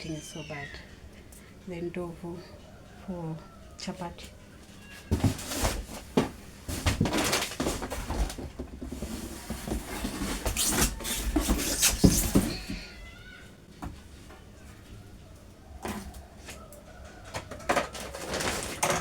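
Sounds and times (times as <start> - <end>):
packaging rustling: 5.1 - 12.8, 17.6 - 19.0.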